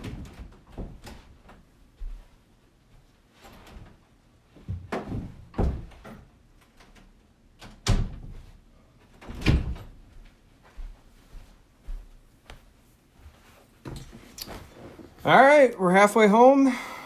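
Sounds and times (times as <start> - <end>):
door knocks and thuds: 4.7 - 6.0.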